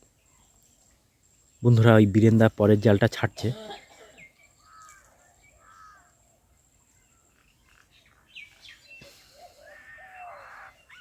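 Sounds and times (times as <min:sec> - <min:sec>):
faint bird calls: 0:03.6 - 0:11.0.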